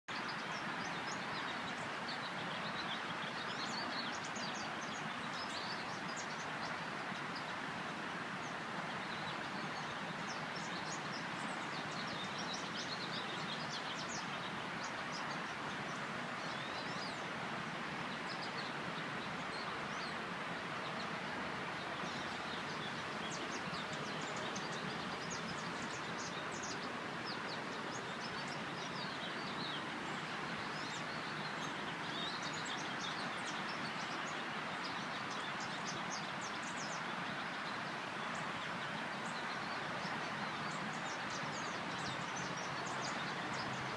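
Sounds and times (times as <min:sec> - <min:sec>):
birds chirping: 0:00.1 - 0:43.9.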